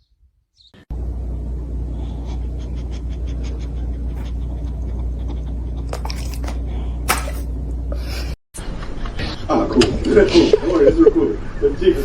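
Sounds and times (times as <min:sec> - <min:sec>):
dog panting: 0:01.9 - 0:05.9.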